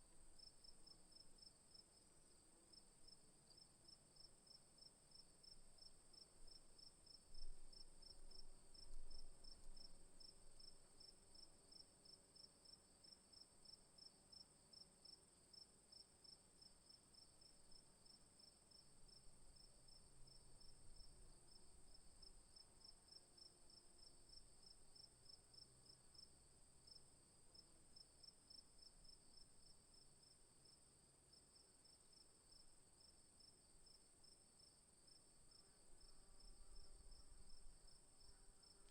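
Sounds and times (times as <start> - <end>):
crickets chirping: 17.1 - 38.9.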